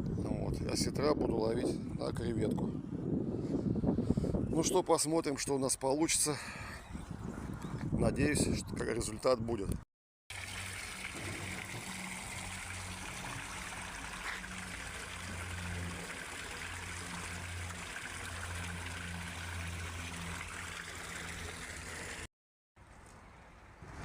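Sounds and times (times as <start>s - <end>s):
running water: 10.3s - 22.3s.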